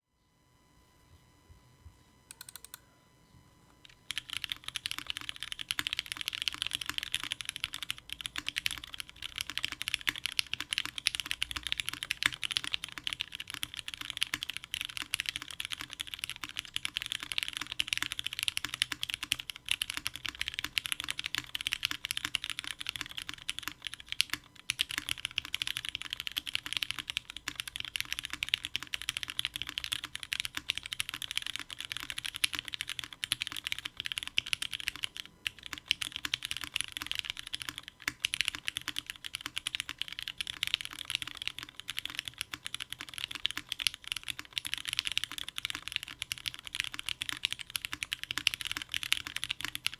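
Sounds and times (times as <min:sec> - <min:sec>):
fast mechanical keyboard typing: 0:03.8 - 0:49.9.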